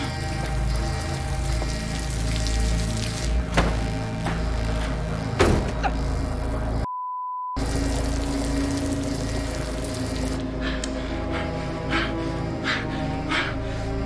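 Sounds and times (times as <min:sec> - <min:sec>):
tense film score: 0:00.0 - 0:06.9, 0:07.6 - 0:14.0.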